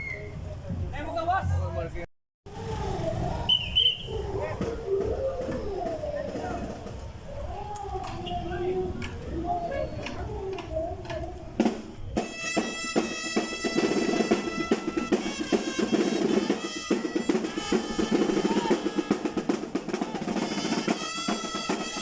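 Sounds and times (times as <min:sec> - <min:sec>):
bass drum beats: 0:00.3 - 0:01.8
snare drum rolls: 0:10.0 - 0:22.0
marching band playing: 0:11.6 - 0:22.0.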